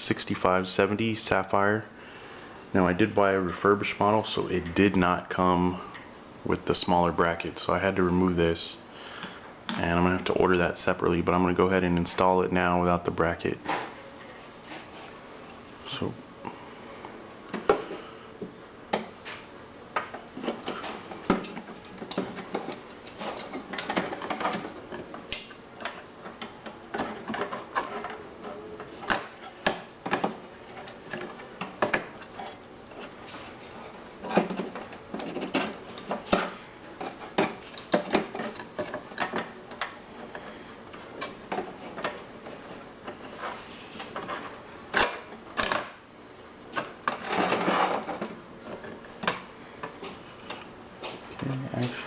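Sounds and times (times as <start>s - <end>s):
clicks and knocks of computer parts: 20.0s - 32.6s, 34.2s - 43.2s, 43.9s - 46.0s.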